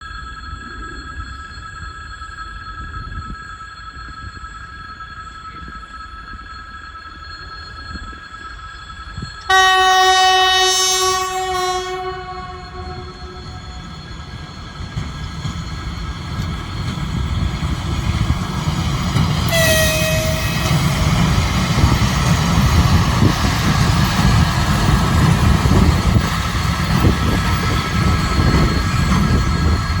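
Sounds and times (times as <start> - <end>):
train whistle blast: 9.5 - 14.5, 19.5 - 21.9
train rumbling past: 9.5 - 30.0.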